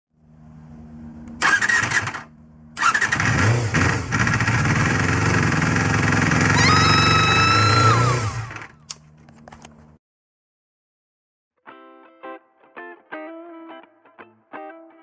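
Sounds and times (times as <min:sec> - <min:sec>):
motorcycle engine starting and running: 0:00.2 - 0:10.0.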